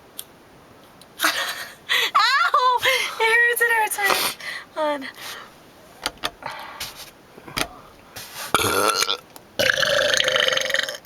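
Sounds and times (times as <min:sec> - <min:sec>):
person burping: 0:08.6 - 0:11.0.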